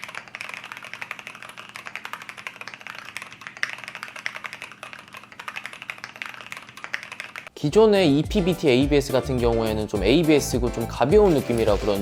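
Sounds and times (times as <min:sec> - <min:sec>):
mechanical keyboard typing: 0:00.0 - 0:07.5.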